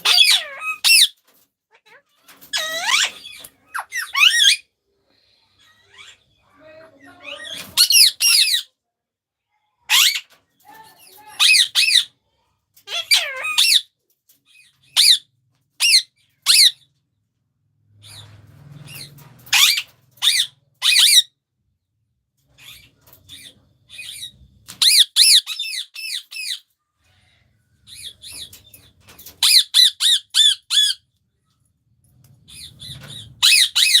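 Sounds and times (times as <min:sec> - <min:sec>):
parrots screeching: 0:00.0 - 0:04.7, 0:07.2 - 0:08.7, 0:09.9 - 0:10.2, 0:11.3 - 0:12.2, 0:12.8 - 0:13.9, 0:14.9 - 0:16.8, 0:18.9 - 0:21.3, 0:23.9 - 0:26.6, 0:29.4 - 0:31.0, 0:32.5 - 0:34.0.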